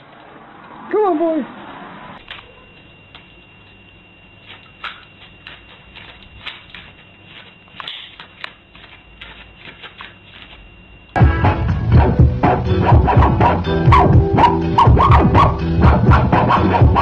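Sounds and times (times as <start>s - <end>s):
faint steady hum: 0.0s - 12.8s
dog barking: 2.3s - 2.8s, 13.9s - 17.0s
dog claws clicking on hard floor: 4.5s - 10.6s
loud music: 11.2s - 17.0s.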